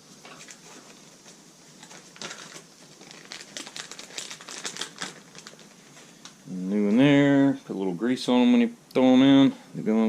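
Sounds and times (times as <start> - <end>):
crinkling and small clicks: 0.2 - 6.4.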